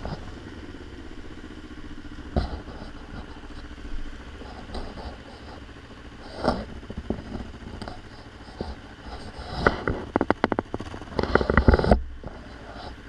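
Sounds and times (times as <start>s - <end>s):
motorcycle engine running: 0.0s - 13.0s
sharp clattering knocks: 4.4s - 12.4s.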